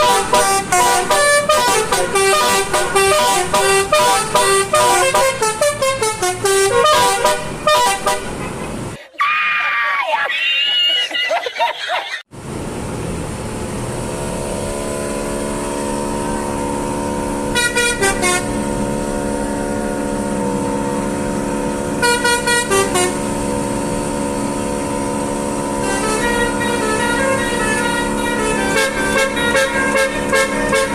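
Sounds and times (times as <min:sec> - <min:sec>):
low vehicle rumble: 0:00.0 - 0:09.0, 0:12.3 - 0:30.9
musical multi-tone car horn: 0:00.0 - 0:09.0, 0:15.2 - 0:30.9.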